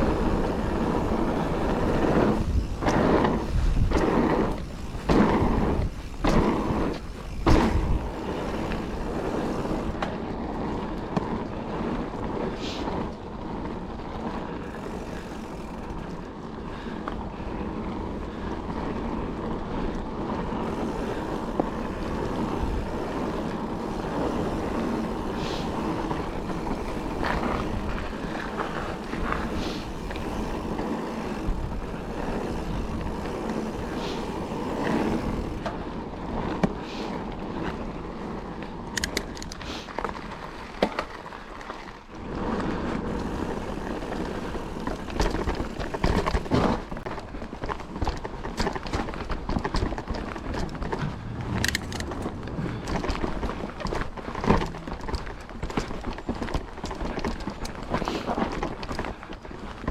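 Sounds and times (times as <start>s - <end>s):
bike tyres on dirt trail: 0.0s - 59.9s
stones and bike rattling: 0.0s - 59.9s.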